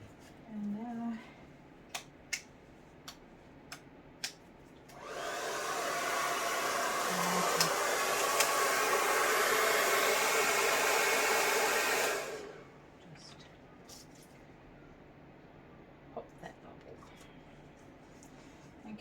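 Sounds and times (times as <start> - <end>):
hair dryer blowing: 4.9 - 12.7.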